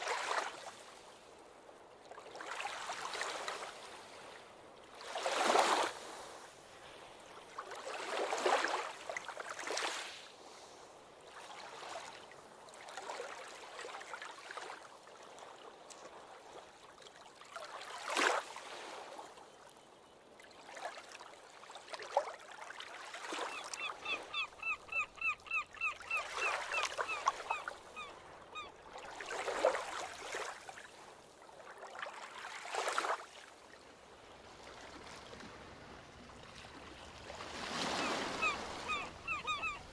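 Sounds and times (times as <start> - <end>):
ocean waves breaking on shore: 0.0 - 19.6, 20.2 - 39.9
bird calling in quick runs: 37.8 - 39.9.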